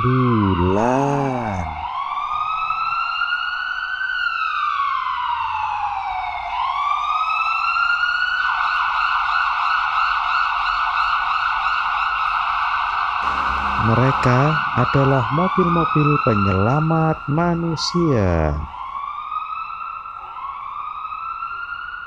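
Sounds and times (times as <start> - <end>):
ambulance siren wailing: 13.2 - 18.6.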